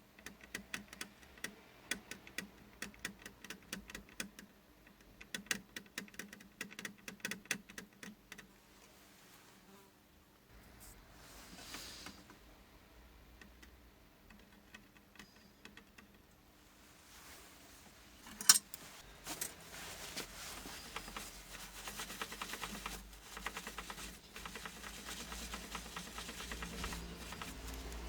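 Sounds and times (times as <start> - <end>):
small tools clicking and tapping: 18.2 - 19.6
small ticks and scraping: 18.2 - 28.0.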